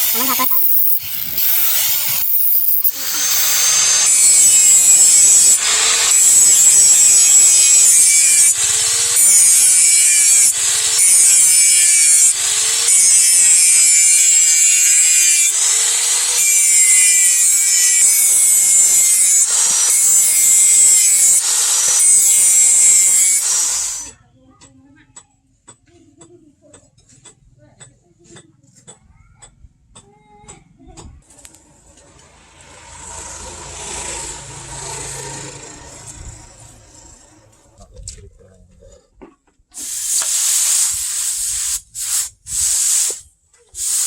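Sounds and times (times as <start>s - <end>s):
grinder grinding steel blade: 0.0s - 24.2s, 32.0s - 37.8s, 39.8s - 43.2s.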